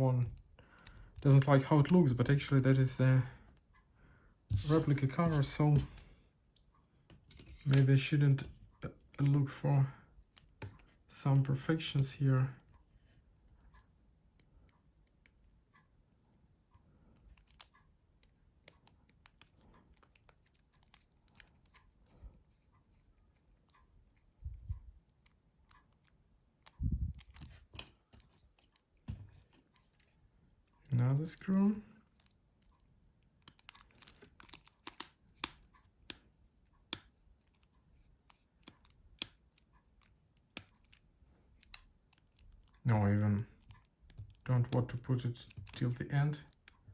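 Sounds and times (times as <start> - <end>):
phone parts clicking and tapping: 25.2 - 30.1, 33.4 - 42.8.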